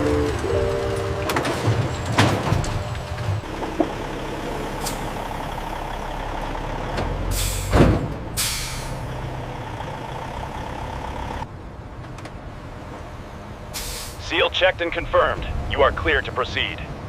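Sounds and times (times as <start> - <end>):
heavy truck running: 0.0 - 17.0
air brake hisses: 7.3 - 7.8, 8.4 - 9.0, 13.7 - 14.2.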